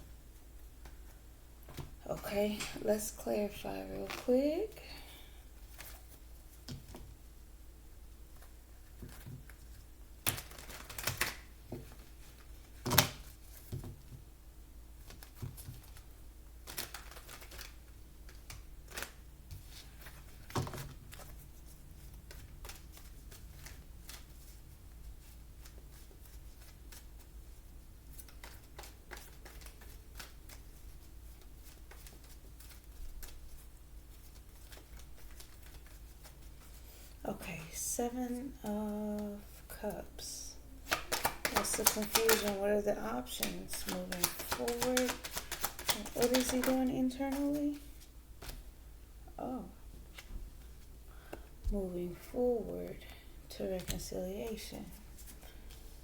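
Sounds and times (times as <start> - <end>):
cards being shuffled: 8.3 - 14.1, 15.0 - 37.7, 40.8 - 48.7
card snaps and taps: 40.9 - 42.6.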